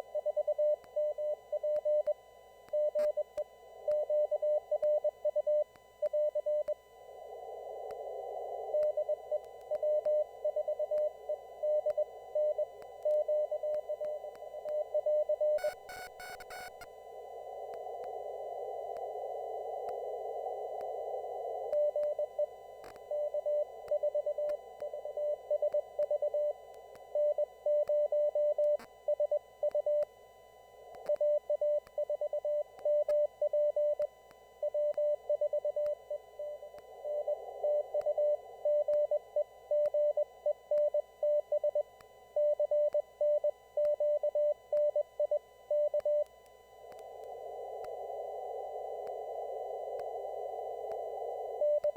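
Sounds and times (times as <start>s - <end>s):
morse code tone: 9.1s - 16.9s.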